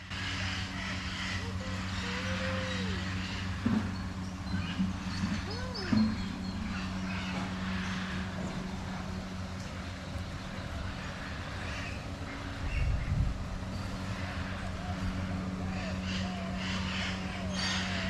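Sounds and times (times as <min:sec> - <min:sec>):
steady low hum: 0:00.0 - 0:18.0
rising and falling animal call: 0:00.1 - 0:03.6.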